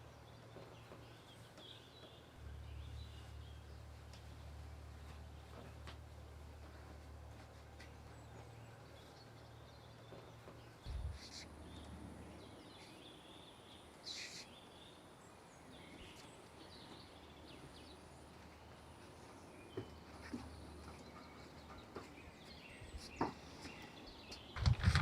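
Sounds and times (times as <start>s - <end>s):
short bird chirps: 14.0s - 14.7s.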